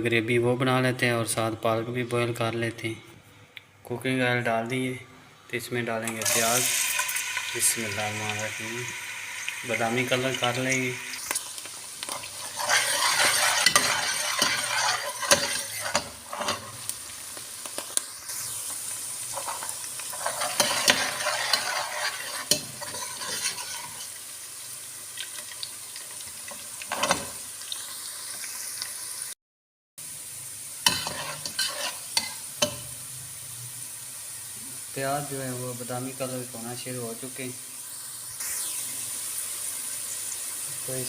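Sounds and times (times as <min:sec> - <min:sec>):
onions sizzling in oil: 0:06.1 - 0:29.4, 0:30.0 - 0:41.0
spoon scraping and knocking pot: 0:12.2 - 0:16.8, 0:19.4 - 0:24.1, 0:30.9 - 0:32.8.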